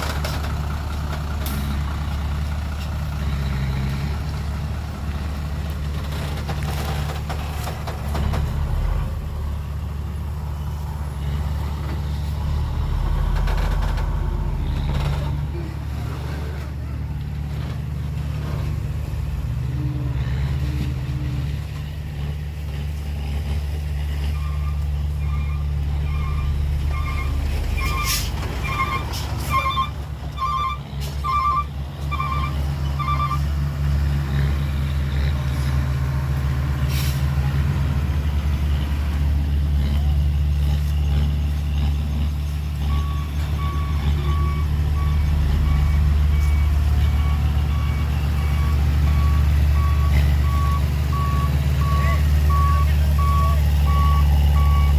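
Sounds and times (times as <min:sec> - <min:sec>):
diesel engine running: 0:00.0 - 0:54.9
back-up alarm beeping: 0:29.6 - 0:33.4.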